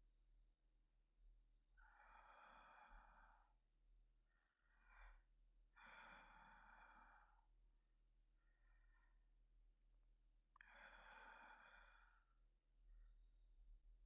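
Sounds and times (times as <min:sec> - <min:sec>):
man breathing softly: 0:01.8 - 0:07.7, 0:08.3 - 0:09.5, 0:10.5 - 0:12.6.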